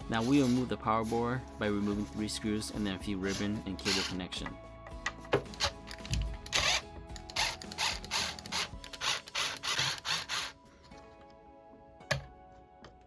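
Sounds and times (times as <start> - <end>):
soft background music: 0.0 - 13.0
screwdriver scraping screws: 5.5 - 10.6.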